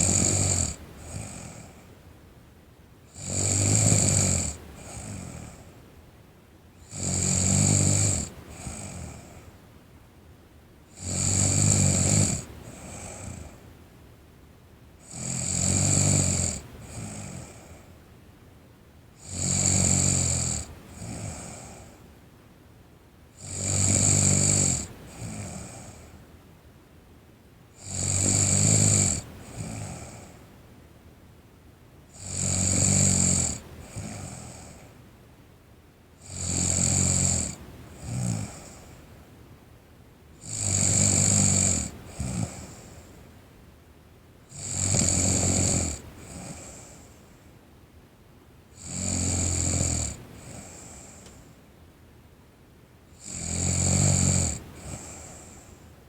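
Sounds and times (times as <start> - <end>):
girl snoring: 0.0 - 1.9, 3.2 - 5.7, 6.9 - 9.4, 11.0 - 13.6, 15.0 - 17.9, 19.2 - 22.0, 23.4 - 26.1, 27.8 - 30.4, 32.1 - 34.8, 36.2 - 38.9, 40.4 - 43.1, 44.5 - 47.1, 48.8 - 51.3, 53.2 - 55.7.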